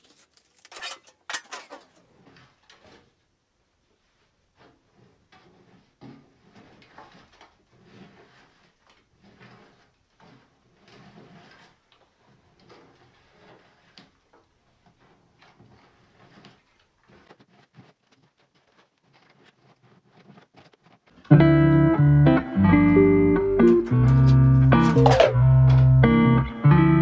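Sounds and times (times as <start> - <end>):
household objects being handled: 0.0 - 2.0, 23.6 - 25.4.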